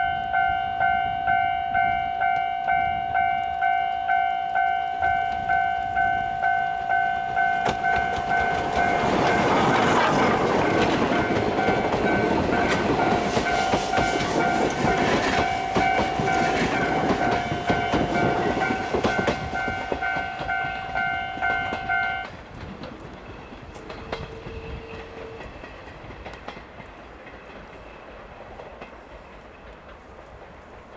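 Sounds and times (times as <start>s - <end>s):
level crossing bell clanging: 0.0s - 22.3s
train rumble: 0.0s - 30.9s
train wheels clacking over rail joints: 7.2s - 30.9s.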